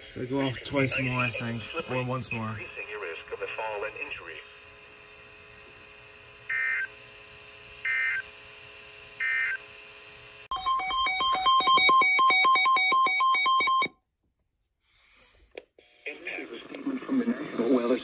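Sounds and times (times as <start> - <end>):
alternating electronic alarm beeps: 10.5 - 13.9.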